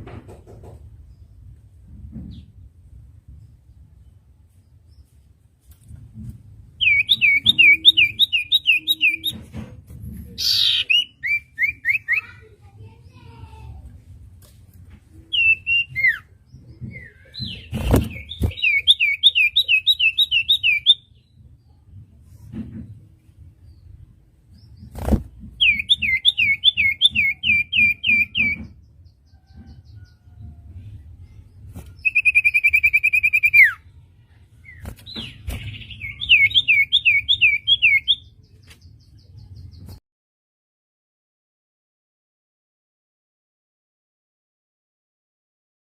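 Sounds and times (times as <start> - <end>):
bird singing whistled notes: 6.8 - 9.4, 15.3 - 16.3, 25.6 - 28.6, 32.0 - 33.8, 35.3 - 38.4
bird harsh rasp: 10.4 - 11.0.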